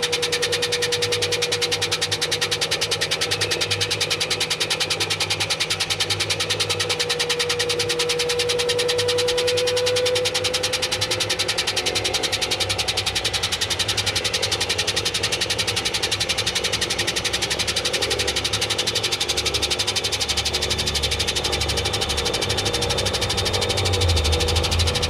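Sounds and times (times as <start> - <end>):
washing machine running: 0.0 - 25.0.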